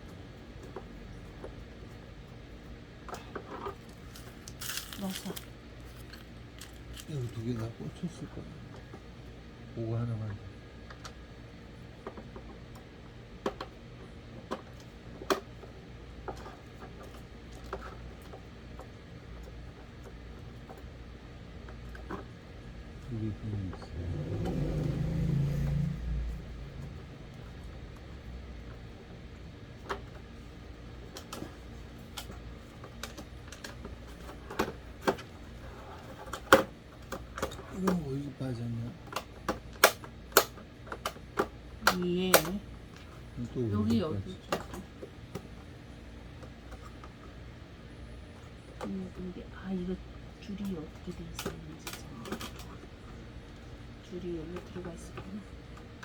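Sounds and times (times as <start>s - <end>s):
steady low hum: 0.0s - 56.0s
plastic fan parts clicking: 3.1s - 7.4s, 39.0s - 42.6s.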